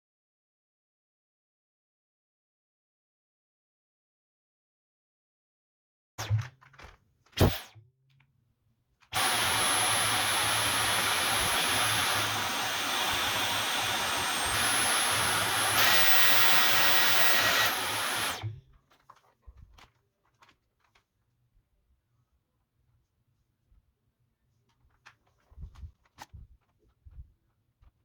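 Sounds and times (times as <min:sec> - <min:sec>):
cordless vacuum running with whine: 0:09.2 - 0:18.6.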